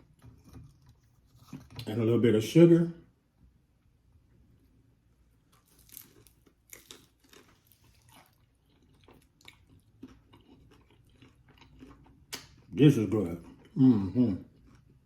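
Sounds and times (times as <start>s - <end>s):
soft chewing crunches: 0.0s - 2.0s, 5.3s - 15.0s.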